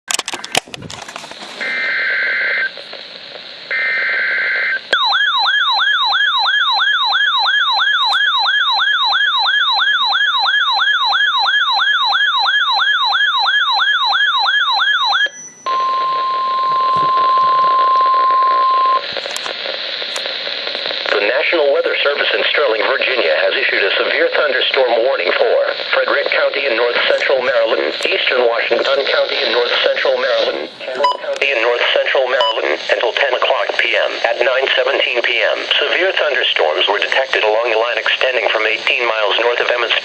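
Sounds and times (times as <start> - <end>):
radio hiss: 0.2 - 5.0, 15.7 - 40.0
warbling siren alarm: 1.6 - 2.6, 3.7 - 19.0.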